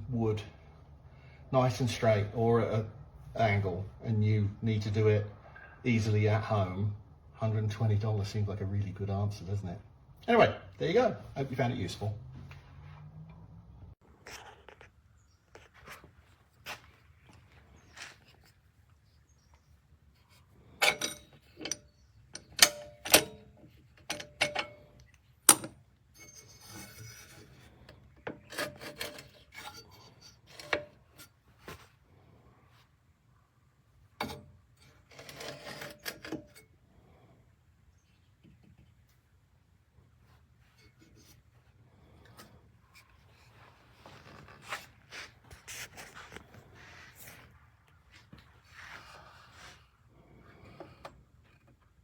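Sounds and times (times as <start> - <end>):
handling rustling and scraping: 11.4 - 37.3, 37.9 - 52.0.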